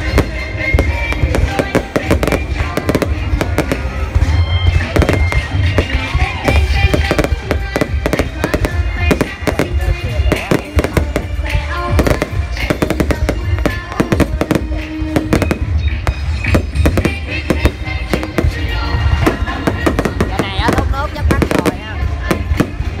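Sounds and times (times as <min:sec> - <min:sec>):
fireworks bangs and crackles: 0:00.0 - 0:23.0
music playing: 0:00.0 - 0:23.0.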